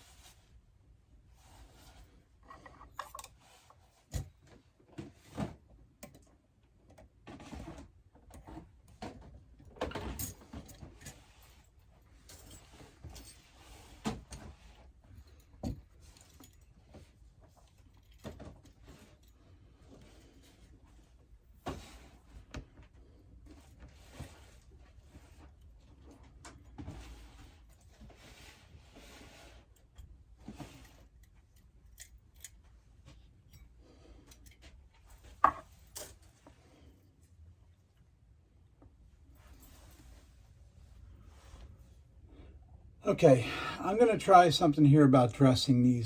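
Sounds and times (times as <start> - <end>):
small metal tools clattering: 2.4 - 4.2.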